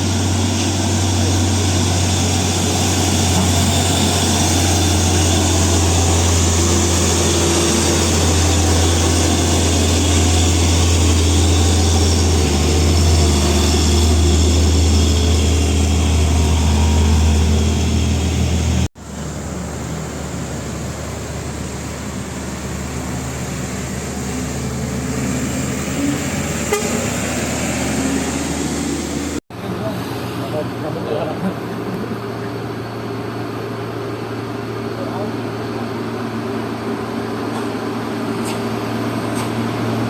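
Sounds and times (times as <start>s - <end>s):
diesel engine straining uphill: 0.0s - 40.0s
passing traffic: 0.0s - 40.0s.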